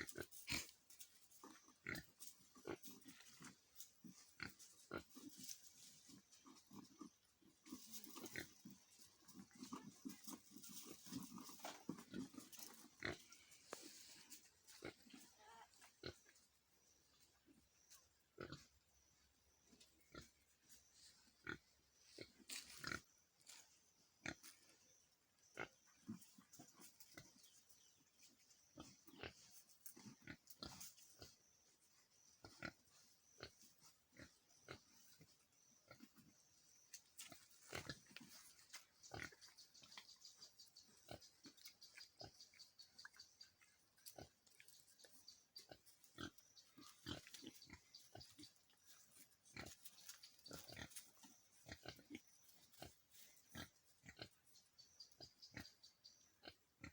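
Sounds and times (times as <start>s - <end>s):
pigs grunting: 0.0s - 16.4s, 18.3s - 18.8s, 32.2s - 56.9s.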